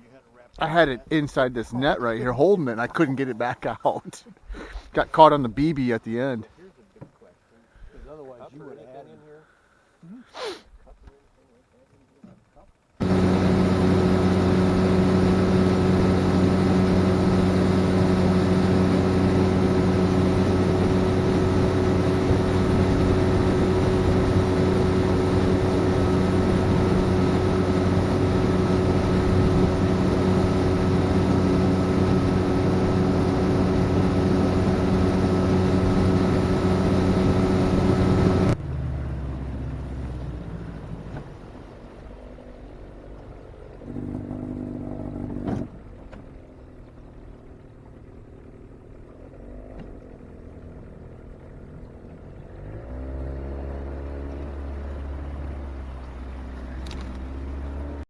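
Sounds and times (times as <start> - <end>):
engine running steadily: 10.8 - 58.0
low rumble: 12.7 - 58.0.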